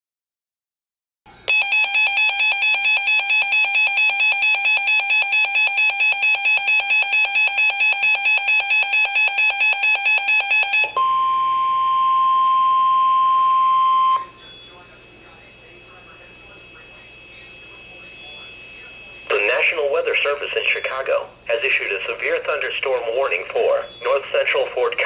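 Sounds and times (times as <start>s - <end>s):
rapid electronic beeping: 1.5s - 11.0s, 14.4s - 25.0s.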